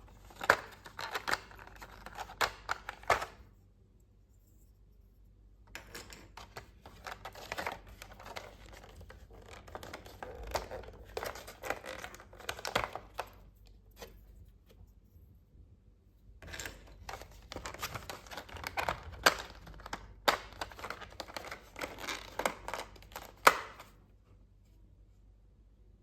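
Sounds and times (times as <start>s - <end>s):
plastic and paper wrapping crinkling: 16.9s - 23.9s.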